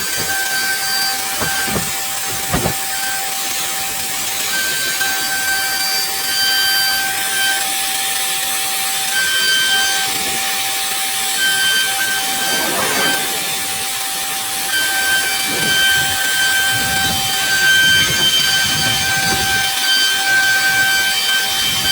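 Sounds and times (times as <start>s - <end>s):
router spindle whining: 0.0s - 21.9s
hiss of cutting wood: 10.0s - 21.9s.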